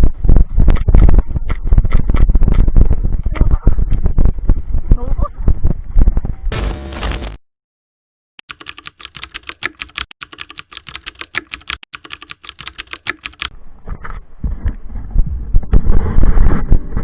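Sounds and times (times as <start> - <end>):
wind-like rumbling: 0.0 - 6.5, 13.5 - 17.0
keyboard typing clicks: 8.4 - 13.5.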